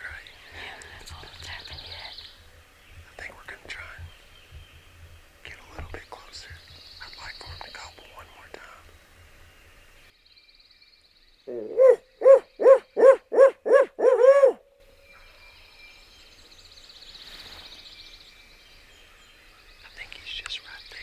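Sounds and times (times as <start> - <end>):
owl hoots: 11.5 - 14.7.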